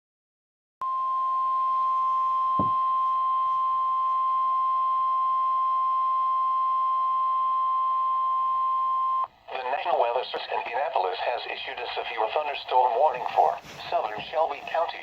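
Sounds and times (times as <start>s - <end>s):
steady high-pitched alarm tone: 0.8s - 9.2s
faint hiss: 11.1s - 15.0s.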